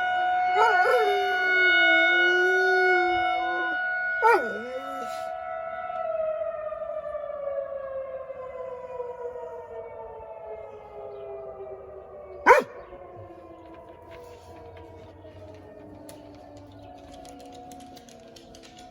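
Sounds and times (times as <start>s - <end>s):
warning siren winding down: 0.0s - 18.9s
dog yelping: 0.6s - 1.1s, 4.2s - 4.9s, 12.5s - 12.8s.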